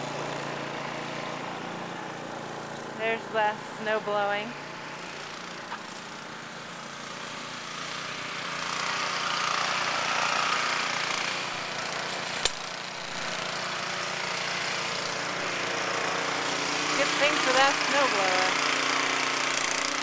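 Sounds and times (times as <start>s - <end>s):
snowblower engine running: 0.0s - 20.0s
sharp click: 12.4s - 12.6s.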